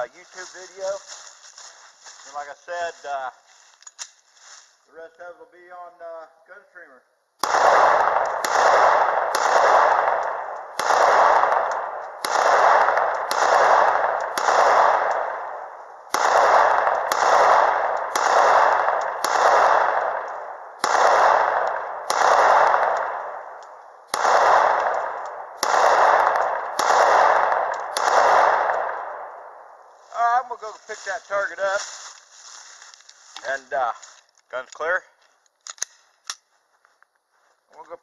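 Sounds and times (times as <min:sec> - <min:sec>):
pistol shots with ringing echo: 0:07.4 - 0:29.8.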